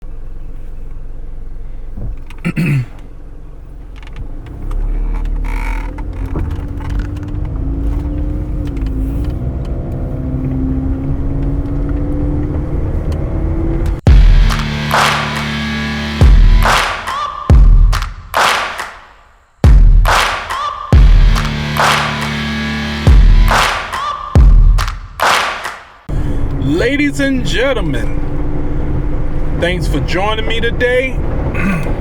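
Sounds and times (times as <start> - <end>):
road rumble inside car: 0.0 - 14.9, 26.1 - 32.0
car engine: 0.0 - 32.0.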